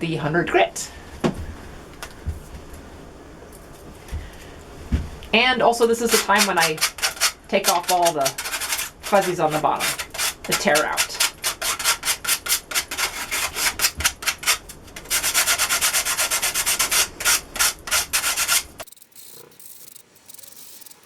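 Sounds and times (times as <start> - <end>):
hand sanding wood with sandpaper: 6.0 - 18.8.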